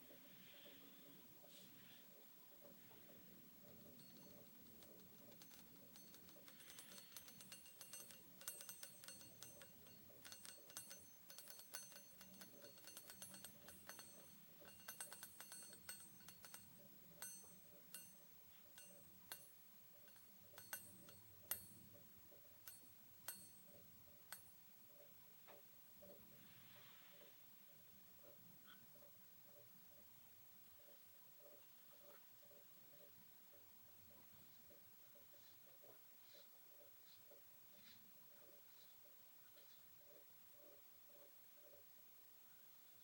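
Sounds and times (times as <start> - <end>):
taps with bell-like ring: 2.9 - 26.2.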